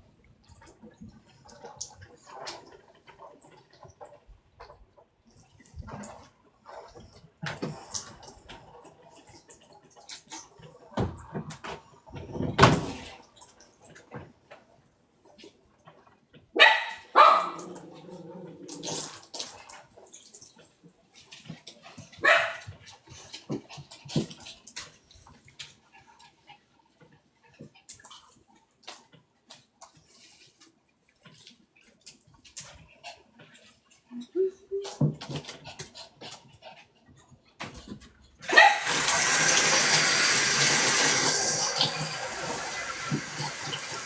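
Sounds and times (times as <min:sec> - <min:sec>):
dogs barking and yipping: 0:16.6 - 0:17.6, 0:22.2 - 0:22.7, 0:38.5 - 0:39.4.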